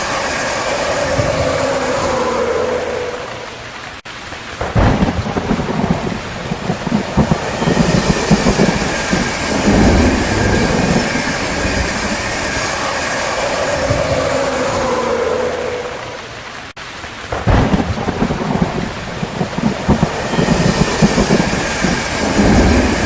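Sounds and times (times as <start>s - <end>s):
heavy rain: 0.0s - 23.0s
thunder rumbling: 0.0s - 23.0s.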